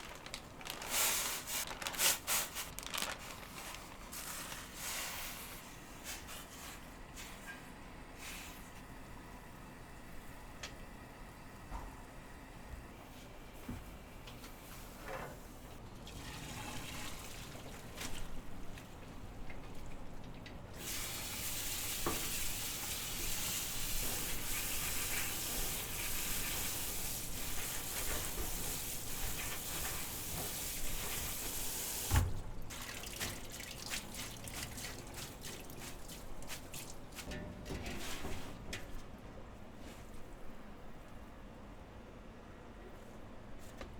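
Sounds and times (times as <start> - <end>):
kitchen tap running: 16.0 - 37.3.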